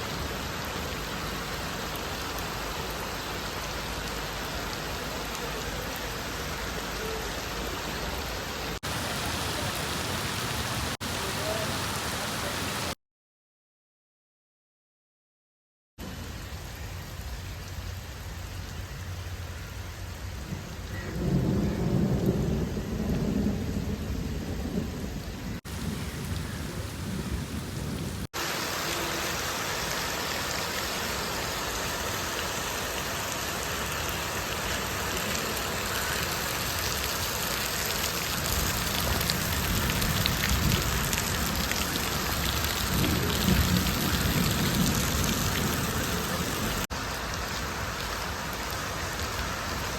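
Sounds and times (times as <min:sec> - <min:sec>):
heavy rain pouring: 0:00.0 - 0:13.0, 0:16.0 - 0:49.9
low rumbles of thunder: 0:20.4 - 0:28.3, 0:38.4 - 0:46.8.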